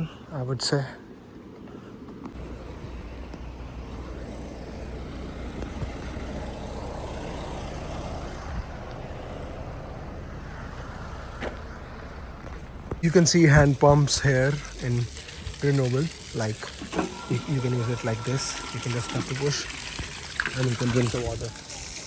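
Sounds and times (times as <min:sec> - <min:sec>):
steady low rumble: 0:02.4 - 0:16.6
motor vehicle passing: 0:02.4 - 0:22.0.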